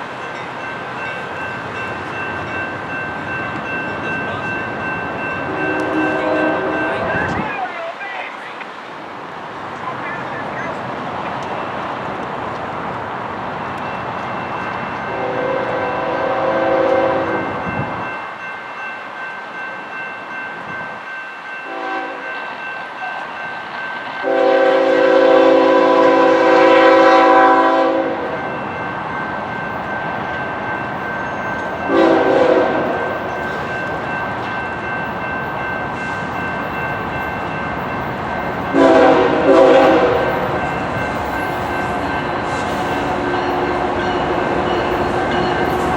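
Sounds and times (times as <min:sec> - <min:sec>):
train rolling by: 0:00.0 - 0:45.9
locomotive air horn blasts: 0:05.5 - 0:07.1, 0:15.1 - 0:17.5, 0:21.7 - 0:22.3, 0:24.2 - 0:28.3, 0:31.9 - 0:33.1, 0:38.7 - 0:40.4.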